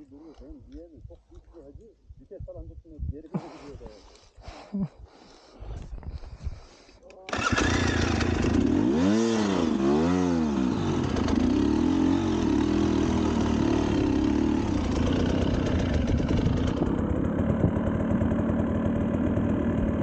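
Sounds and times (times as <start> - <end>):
motorcycle engine revving and idling: 7.3 - 20.0.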